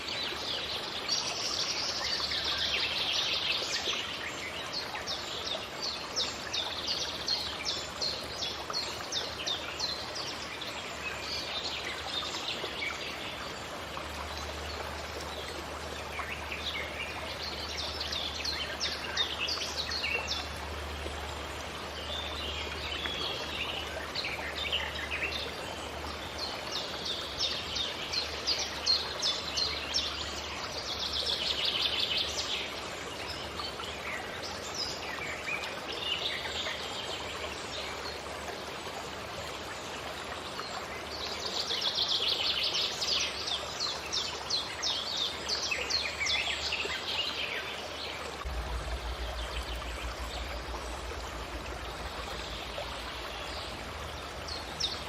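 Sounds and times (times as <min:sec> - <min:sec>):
background rushing noise: 0:48.4 - 0:55.0.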